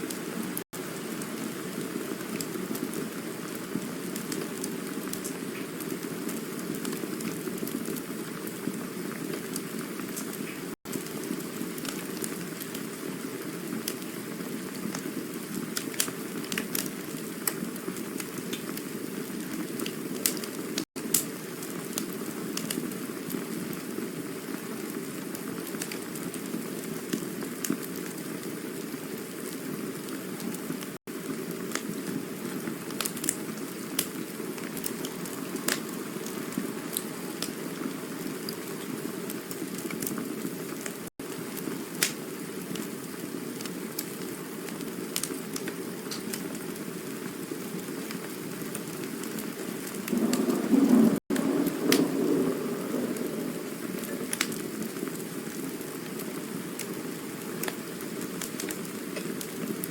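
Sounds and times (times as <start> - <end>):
burning wood crackling and popping: 0.1 - 59.9
low rush of flames: 31.0 - 42.8, 44.0 - 57.8.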